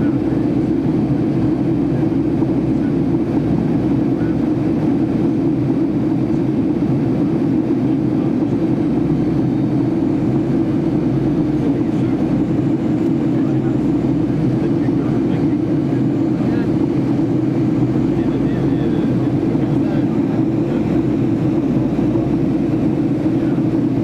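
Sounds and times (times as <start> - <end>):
airplane cabin engine drone: 0.0 - 24.0.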